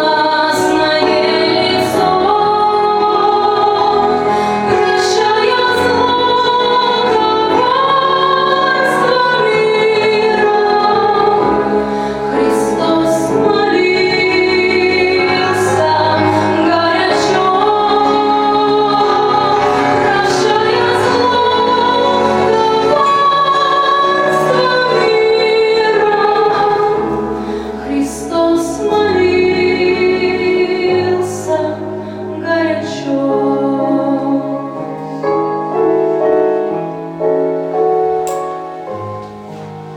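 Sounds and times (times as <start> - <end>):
woman singing long notes: 0.0 - 35.0
instrumental accompaniment: 0.0 - 39.9.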